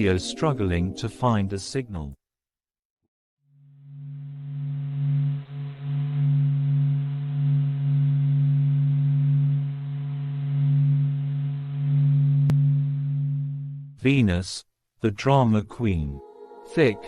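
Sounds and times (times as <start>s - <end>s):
low hum with overtones: 3.6s - 14.0s.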